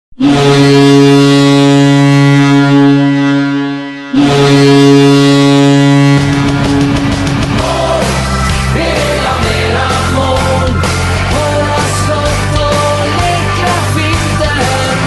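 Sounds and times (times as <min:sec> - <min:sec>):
goal horn blasts: 0:00.1 - 0:07.3
rock music with drums: 0:06.0 - 0:15.0.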